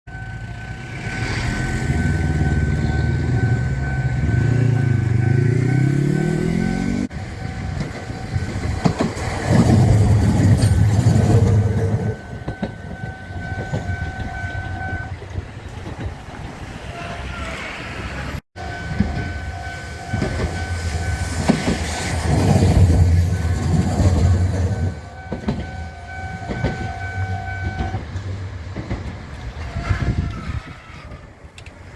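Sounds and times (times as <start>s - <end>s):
level crossing alarm two-tone: 1.6s - 8.5s, 12.2s - 15.1s, 25.2s - 28.0s.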